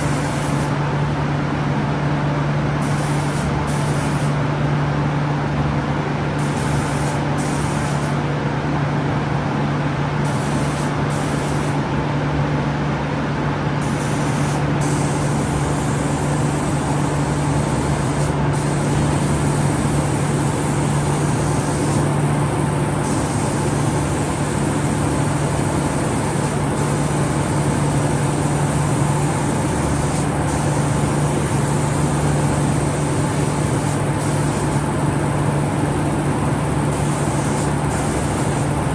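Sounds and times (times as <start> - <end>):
air hissing: 0.0 - 0.8, 2.8 - 4.4, 6.4 - 8.2, 10.2 - 11.8, 13.8 - 22.2, 23.0 - 35.0, 36.9 - 38.8.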